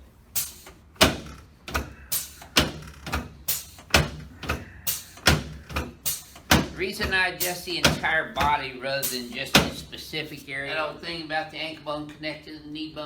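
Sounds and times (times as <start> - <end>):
sharp knocks: 0.4 - 10.0.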